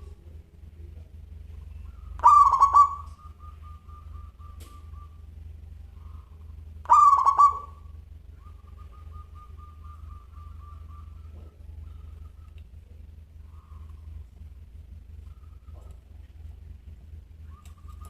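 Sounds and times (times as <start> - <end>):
faint rapid bird trill: 0.0 - 18.0
dove cooing: 1.4 - 18.0.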